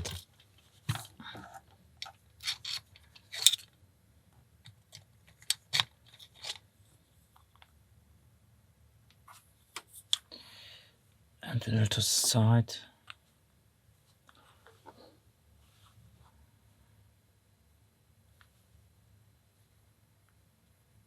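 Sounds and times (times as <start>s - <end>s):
metal lock parts clinking: 2.4s - 3.7s.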